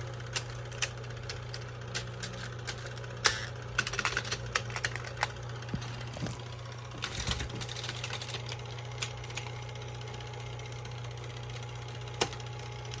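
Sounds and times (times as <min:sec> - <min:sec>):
typewriter motor humming: 0:00.0 - 0:13.0
typewriter keys clicking: 0:00.4 - 0:05.4, 0:07.0 - 0:09.6.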